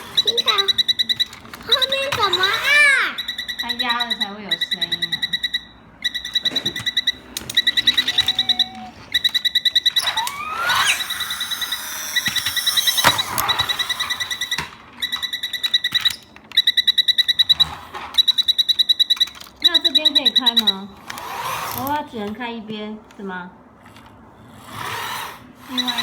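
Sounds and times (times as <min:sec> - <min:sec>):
toy train rapid beeping: 0:00.0 - 0:22.4, 0:23.8 - 0:26.0
electronic sliding tones: 0:06.0 - 0:15.9.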